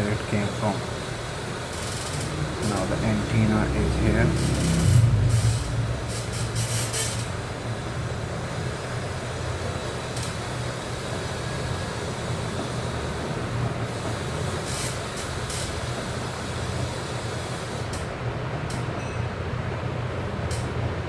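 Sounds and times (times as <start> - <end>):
low background rumble: 0.0 - 9.8.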